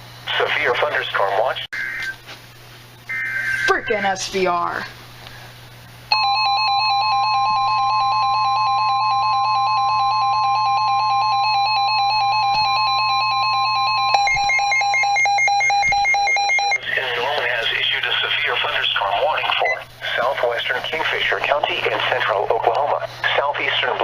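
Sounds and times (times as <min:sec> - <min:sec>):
fast beeping alarm: 0:03.1 - 0:04.1, 0:06.1 - 0:16.8
steady alert tone: 0:13.5 - 0:16.8.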